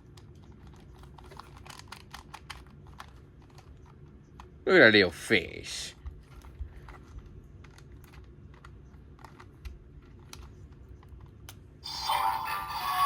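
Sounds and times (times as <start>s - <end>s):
toy electronic sound effects: 11.8s - 13.0s.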